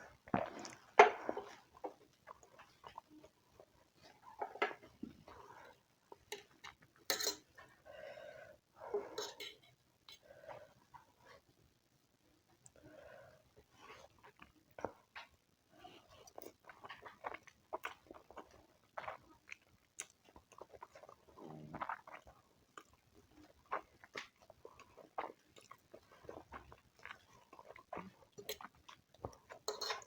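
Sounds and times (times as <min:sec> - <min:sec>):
person chewing food: 0:00.2 - 0:03.4, 0:16.2 - 0:30.0.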